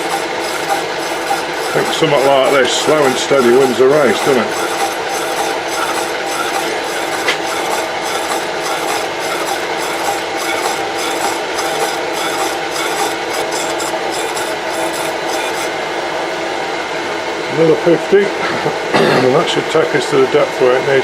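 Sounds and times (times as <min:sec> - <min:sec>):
saw blade cutting steel: 0:00.0 - 0:15.8.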